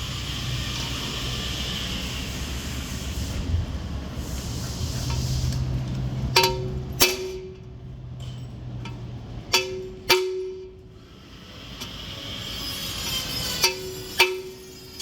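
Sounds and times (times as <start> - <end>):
metal struck ringing: 6.4 - 7.7, 9.5 - 10.8.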